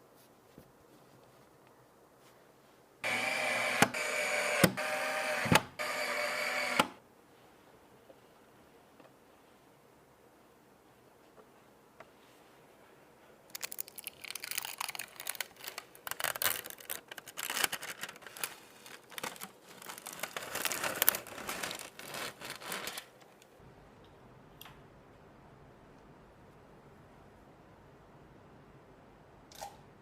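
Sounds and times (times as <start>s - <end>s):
packaging crinkling and tearing: 13.5s - 23.5s.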